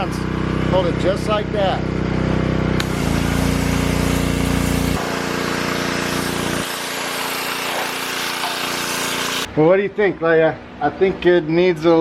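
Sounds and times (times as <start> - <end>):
pressure washer motor humming: 0.0 - 9.5
water jet hissing: 2.8 - 9.5.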